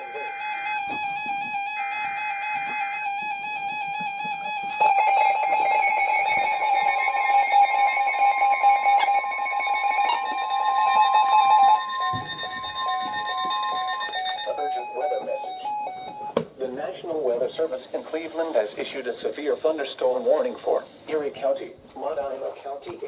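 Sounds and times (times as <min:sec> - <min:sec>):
steady weather radio warning tone: 0:00.0 - 0:16.3
electronic alert beeping: 0:00.0 - 0:16.4.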